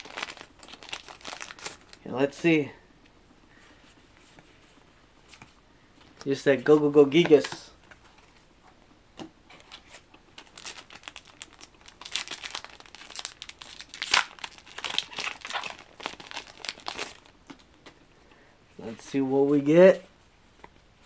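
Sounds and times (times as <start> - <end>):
foil wrapper crinkling and tearing: 0.0 - 2.0, 10.4 - 17.7.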